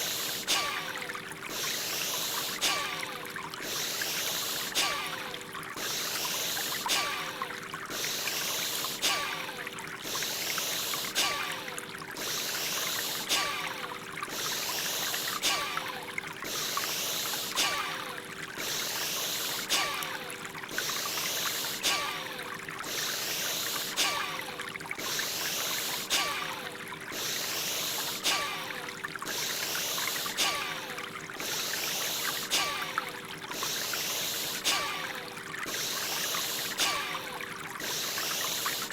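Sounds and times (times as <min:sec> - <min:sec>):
flowing water: 0:00.0 - 0:38.9
rhythmic forceful breathing: 0:00.0 - 0:38.9.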